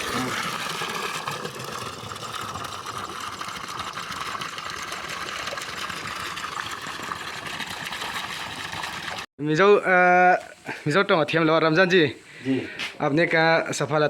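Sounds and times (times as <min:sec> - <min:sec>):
water gushing from pump outlet: 0:00.0 - 0:09.3.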